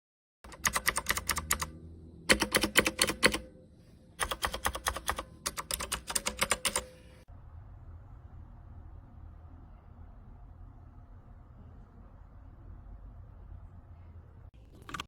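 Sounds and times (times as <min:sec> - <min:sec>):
mechanical keyboard typing: 0:00.5 - 0:03.5, 0:04.2 - 0:07.0.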